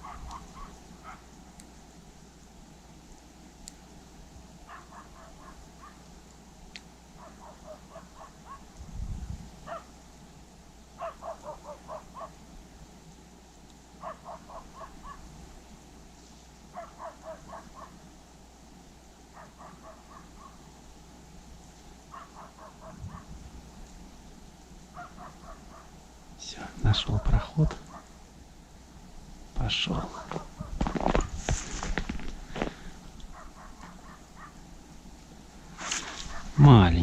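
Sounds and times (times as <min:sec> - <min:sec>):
crow-like bird calling: 0:00.0 - 0:01.2, 0:14.0 - 0:15.3, 0:22.1 - 0:23.3, 0:24.9 - 0:26.0.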